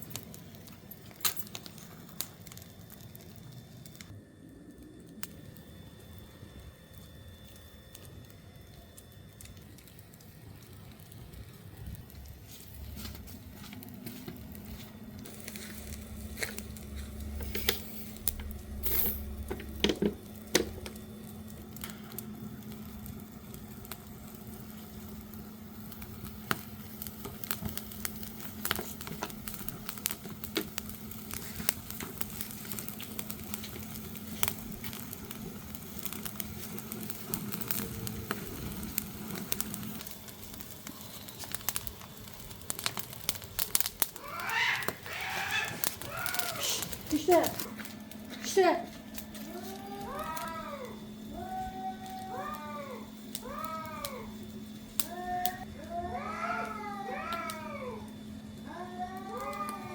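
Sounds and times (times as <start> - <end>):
wood fire crackling: 0.0 - 59.9
sharp fire pops: 15.3 - 48.1.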